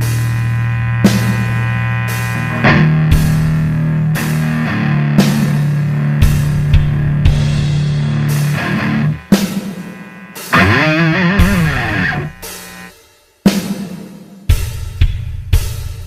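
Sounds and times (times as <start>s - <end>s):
distorted electric guitar: 0.0s - 12.9s
drum hits: 10.5s - 12.6s.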